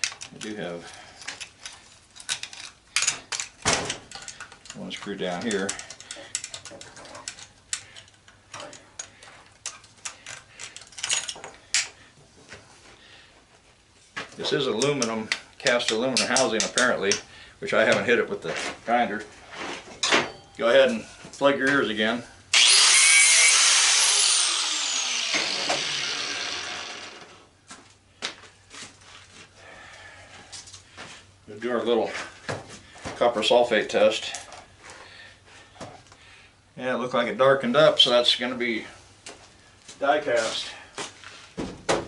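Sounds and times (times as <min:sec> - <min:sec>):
angle grinder grinding metal: 0:22.5 - 0:27.5.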